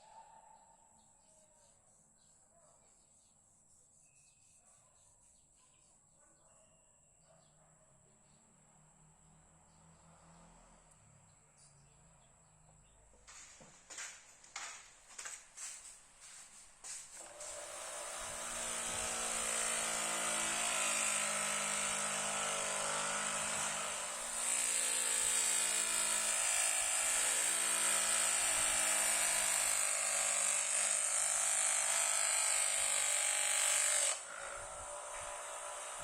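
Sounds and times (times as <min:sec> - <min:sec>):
small power tool motor running: 0:17.2 - 0:36.0.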